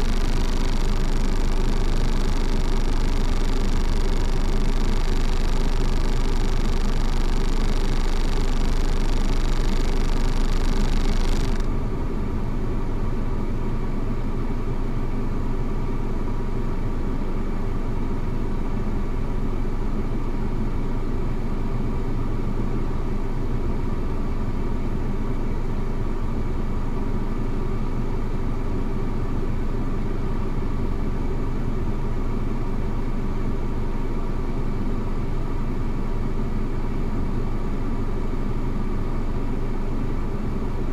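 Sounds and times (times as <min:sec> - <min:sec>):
car engine running: 0:00.0 - 0:11.7.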